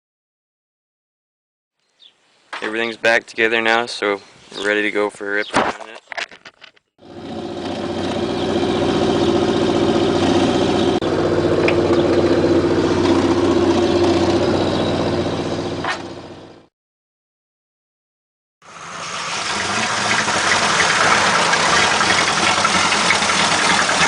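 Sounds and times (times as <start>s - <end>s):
car engine running: 7.0s - 16.7s, 18.7s - 24.0s.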